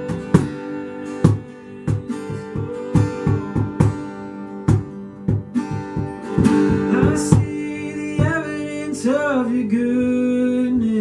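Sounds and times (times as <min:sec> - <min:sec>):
regular beats: 0:00.0 - 0:08.8
held chords: 0:00.0 - 0:09.3
acoustic guitar strumming: 0:00.0 - 0:11.0.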